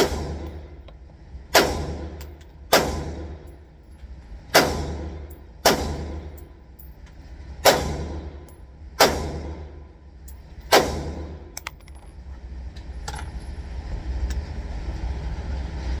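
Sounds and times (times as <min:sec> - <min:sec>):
rifle shots with ringing tail: 0:00.0 - 0:00.8, 0:01.5 - 0:03.7, 0:04.5 - 0:06.6, 0:07.6 - 0:10.0, 0:10.6 - 0:11.6
steady low rumble: 0:00.0 - 0:16.0.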